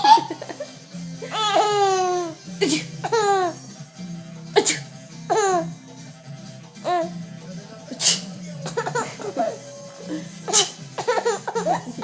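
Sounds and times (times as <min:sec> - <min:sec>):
baby laughing: 0:00.0 - 0:03.6, 0:05.3 - 0:05.8, 0:06.8 - 0:07.2, 0:08.6 - 0:09.7, 0:10.4 - 0:12.0.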